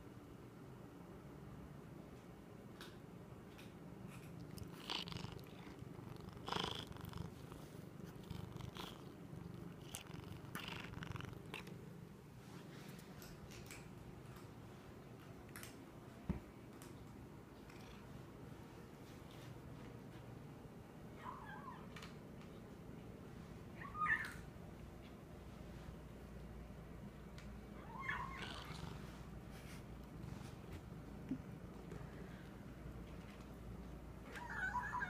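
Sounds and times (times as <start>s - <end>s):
kitten eating sounds: 2.8s - 19.8s
kitten purring while eating: 3.4s - 19.4s, 27.2s - 34.1s.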